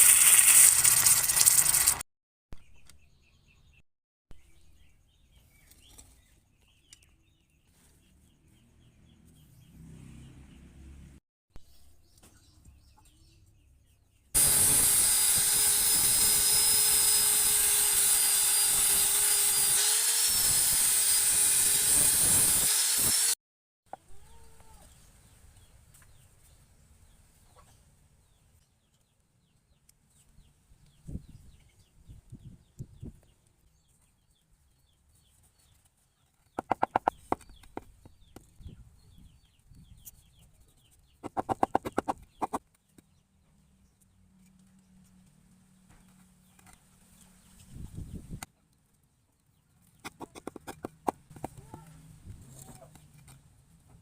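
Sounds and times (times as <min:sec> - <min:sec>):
electric grinder running: 0:14.4 - 0:23.4
chickens clucking: 0:36.6 - 0:37.8, 0:41.2 - 0:42.6.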